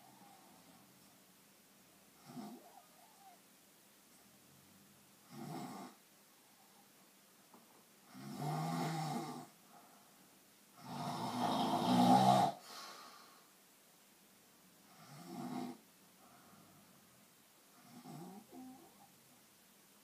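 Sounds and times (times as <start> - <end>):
snoring: 2.2 - 3.4, 5.2 - 6.0, 8.1 - 9.6, 10.8 - 12.6, 14.9 - 15.8, 17.7 - 19.1.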